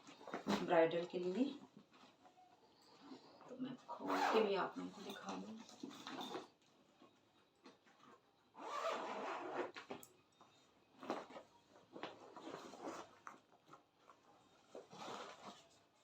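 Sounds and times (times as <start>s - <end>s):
zipper being pulled: 3.9s - 5.4s, 8.5s - 10.1s, 12.0s - 13.3s, 14.8s - 15.8s.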